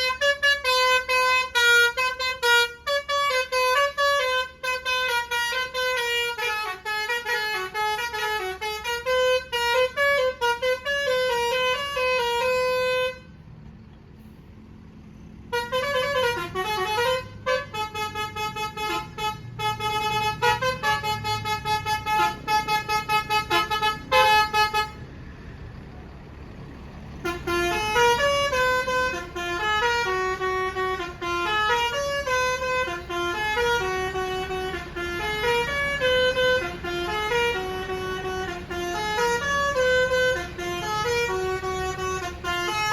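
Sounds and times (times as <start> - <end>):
bus horn playing a tune: 0.0 - 13.6, 14.2 - 25.5, 26.4 - 42.9.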